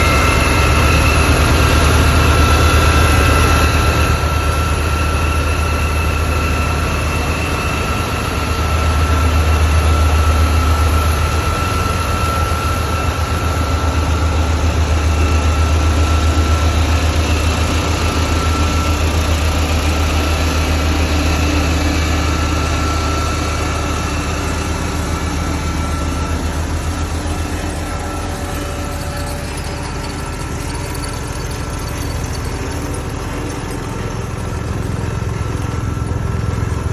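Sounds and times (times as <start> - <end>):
road roller engine humming: 0.0 - 36.9
thin high whine: 0.0 - 36.9.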